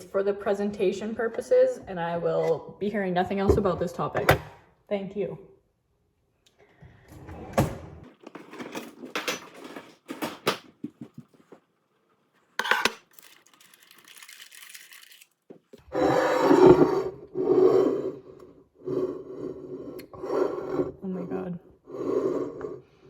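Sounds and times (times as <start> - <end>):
dishes and cutlery clattering: 12.6 - 13.3.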